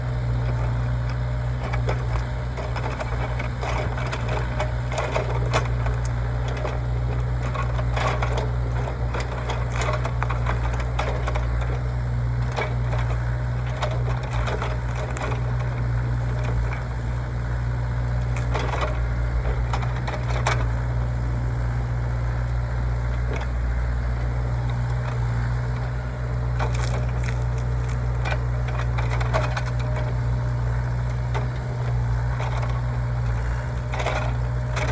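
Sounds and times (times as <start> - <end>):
excavator diesel engine running: 0.0 - 34.9
wood cracking and snapping: 3.1 - 11.8, 25.9 - 30.4.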